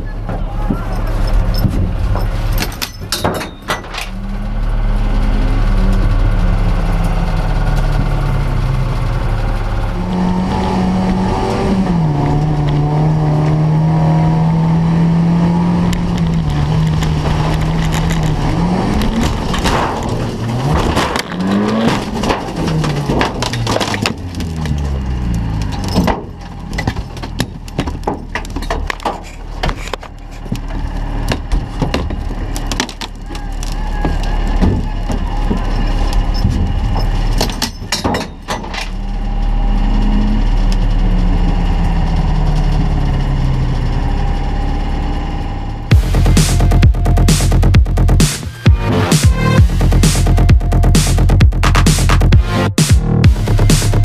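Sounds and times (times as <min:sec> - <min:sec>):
sharp clicks and knocks: 0:00.2 - 0:04.2, 0:15.9 - 0:39.1, 0:45.9 - 0:54.0
race car engine revving: 0:04.0 - 0:27.2, 0:39.0 - 0:54.0.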